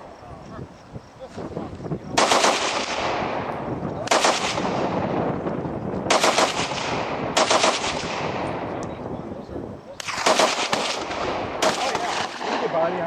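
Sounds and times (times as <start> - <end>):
machine gun firing bursts: 2.2 - 3.2, 4.1 - 4.9, 6.1 - 8.4, 10.0 - 12.8
gunshot echo: 2.2 - 5.3, 6.1 - 9.0, 10.0 - 13.0.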